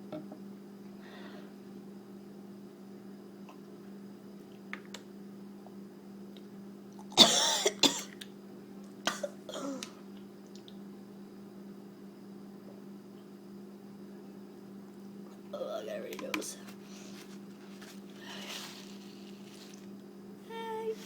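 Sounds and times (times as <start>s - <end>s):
woman coughing: 7.2s - 8.2s, 9.1s - 9.8s.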